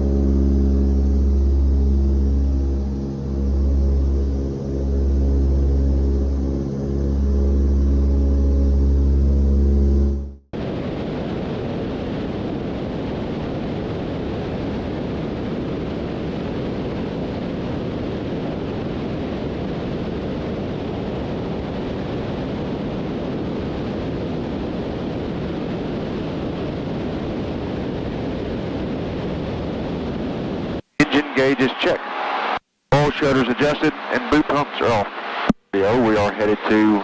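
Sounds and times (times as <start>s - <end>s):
airplane engines and airflow: 33.0s - 37.0s.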